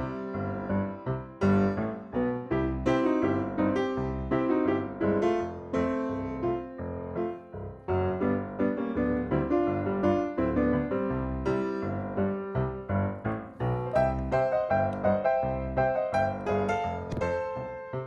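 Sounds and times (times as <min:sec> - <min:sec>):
piano tune with bass line: 0:00.0 - 0:18.0.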